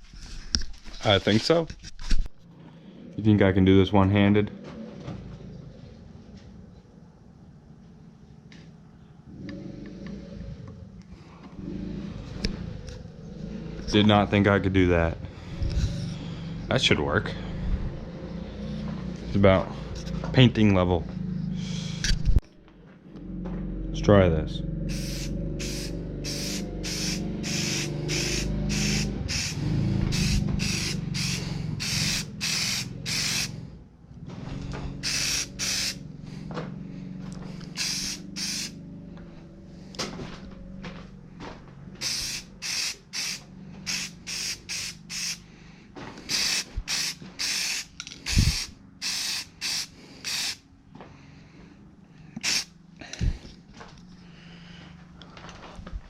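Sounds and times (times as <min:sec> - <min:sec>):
low steady hum: 0:00.0 - 0:42.6
spray can hissing bursts: 0:24.9 - 0:33.5, 0:35.0 - 0:36.0, 0:37.7 - 0:38.8, 0:42.0 - 0:45.5, 0:46.2 - 0:50.6, 0:52.4 - 0:52.7.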